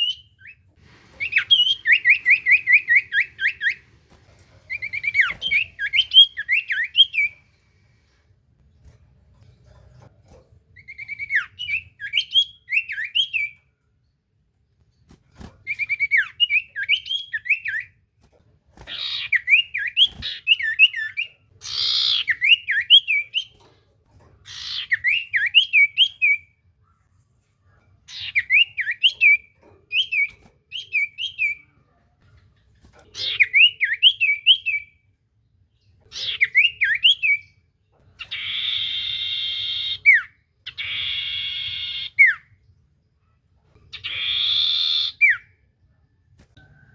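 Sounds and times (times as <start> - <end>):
bird singing whistled notes: 1.2 - 3.8, 4.7 - 7.4, 10.8 - 13.6, 33.2 - 35.0, 36.2 - 37.6.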